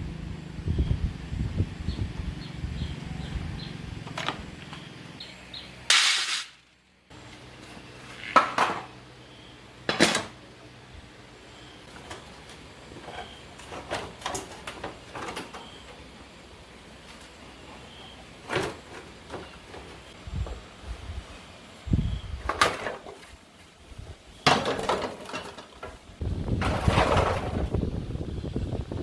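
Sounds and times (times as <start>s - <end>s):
low steady rumble: 0.0s - 5.8s.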